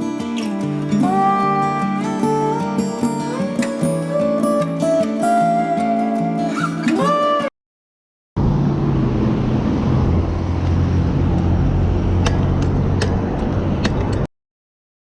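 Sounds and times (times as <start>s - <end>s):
wind and road noise rumble: 8.4s - 14.3s.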